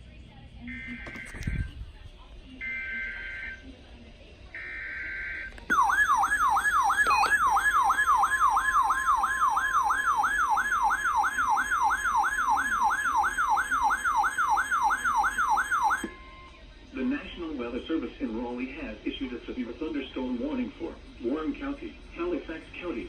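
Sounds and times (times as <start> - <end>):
warbling electronic alert tone: 5.2 - 16.0.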